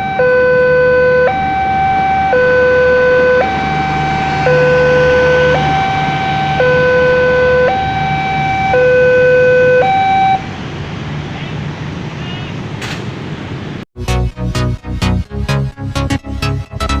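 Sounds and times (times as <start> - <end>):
two-tone level-crossing siren: 0.0 - 10.6
low traffic hum: 0.0 - 15.8.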